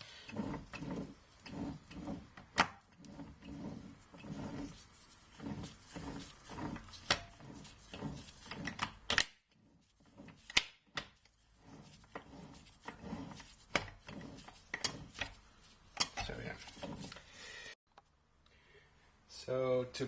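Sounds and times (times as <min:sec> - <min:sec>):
rubbing on workbench: 0:00.1 - 0:02.4, 0:03.0 - 0:08.8, 0:11.3 - 0:17.3
tools clicking and knocking: 0:07.0 - 0:09.4, 0:16.0 - 0:17.2.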